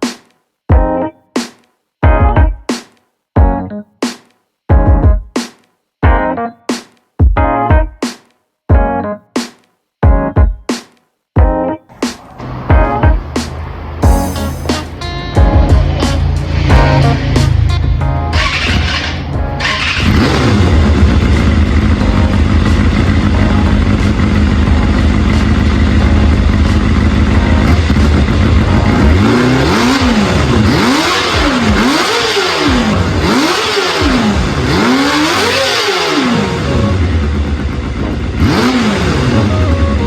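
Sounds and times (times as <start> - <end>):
motorcycle engine revving: 12.0 - 40.0
motorcycle engine idling: 18.4 - 40.0.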